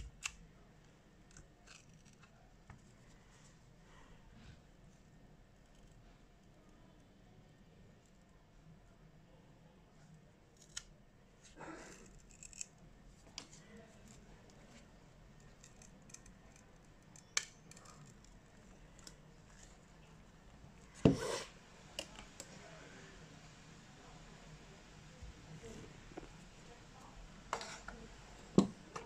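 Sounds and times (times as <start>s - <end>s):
short scrape: 21.1s - 21.6s.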